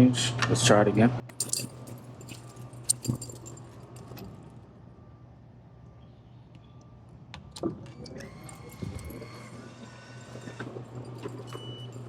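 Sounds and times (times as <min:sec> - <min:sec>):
vending machine humming: 0:01.2 - 0:05.2, 0:08.0 - 0:12.0.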